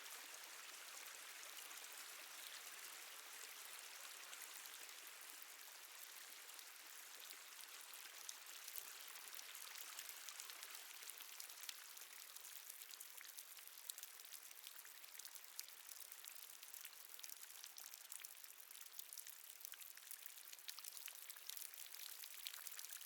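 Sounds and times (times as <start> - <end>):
water dripping: 12.5 - 23.0.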